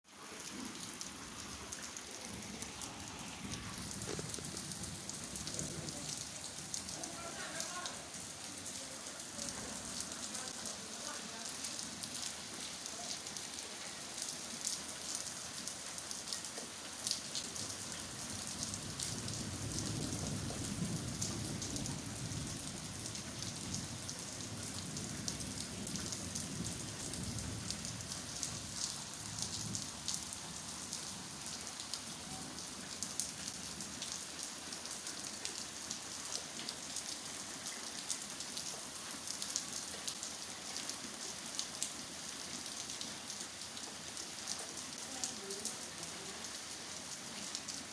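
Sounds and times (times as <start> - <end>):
rain falling: 0.0 - 47.9.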